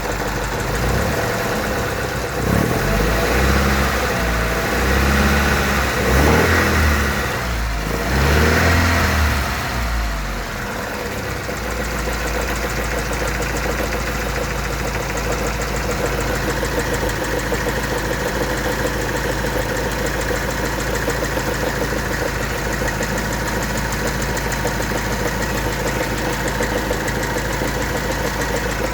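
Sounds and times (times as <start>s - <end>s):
car engine revving and idling: 0.0s - 28.9s
fast even engine knock: 10.7s - 28.9s.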